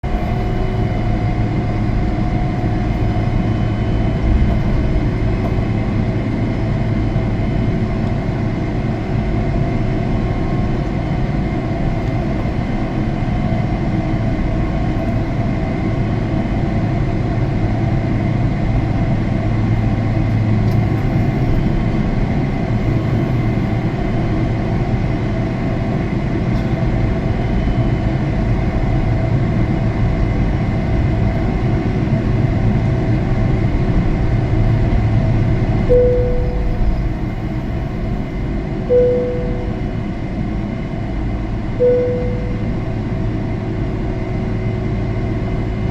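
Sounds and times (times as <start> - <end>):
jet engine drone in cabin: 0.0 - 45.9
faint steady tones: 35.9 - 40.2, 41.8 - 42.9.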